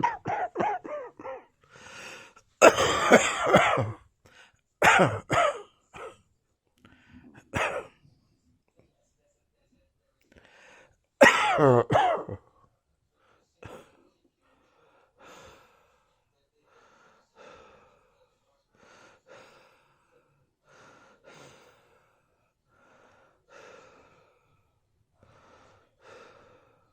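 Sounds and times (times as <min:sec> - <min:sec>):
person coughing: 0:00.0 - 0:01.5, 0:02.6 - 0:04.0, 0:04.8 - 0:06.1, 0:07.6 - 0:07.9, 0:11.2 - 0:12.4
wheezing breaths: 0:00.0 - 0:02.4, 0:13.2 - 0:24.6, 0:25.2 - 0:26.9.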